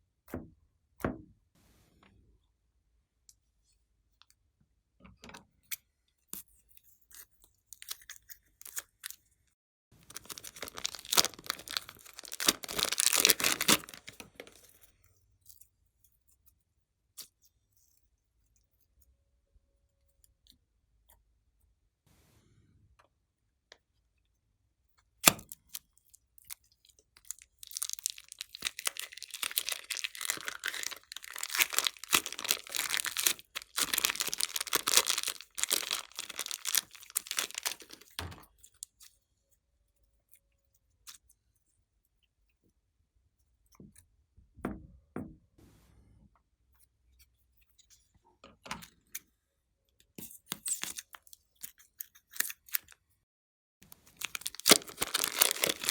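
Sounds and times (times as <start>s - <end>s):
slime crackling and popping: 10.1s - 14.5s, 27.2s - 38.2s, 54.0s - 55.9s.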